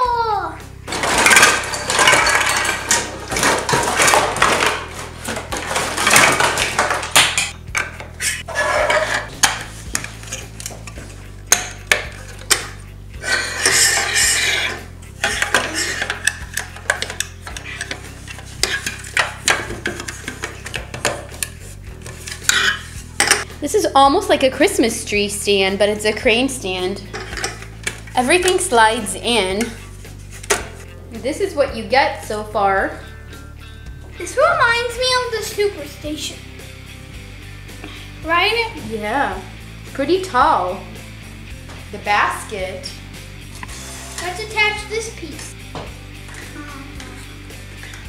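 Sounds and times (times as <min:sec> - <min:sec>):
plastic toy parts clattering: 0:00.9 - 0:12.8, 0:13.6 - 0:23.5, 0:27.1 - 0:28.6.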